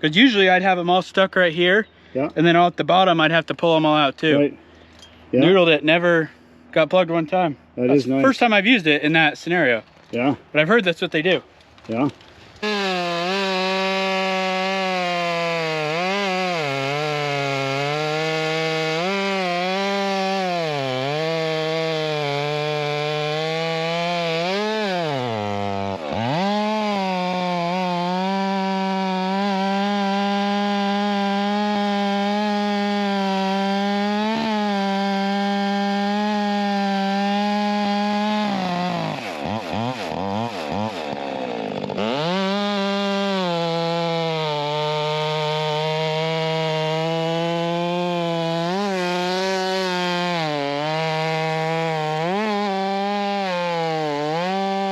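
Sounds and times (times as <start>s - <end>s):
chainsaw cutting wood: 11.6s - 54.9s.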